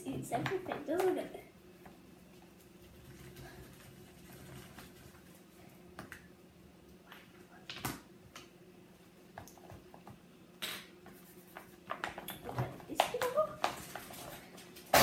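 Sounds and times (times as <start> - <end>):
clicks and taps of containers: 11.9 - 14.1.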